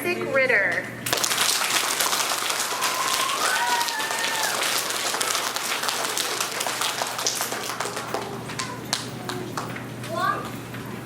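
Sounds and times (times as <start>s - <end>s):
children clapping: 1.0s - 10.6s
high child's voice: 8.0s - 10.6s.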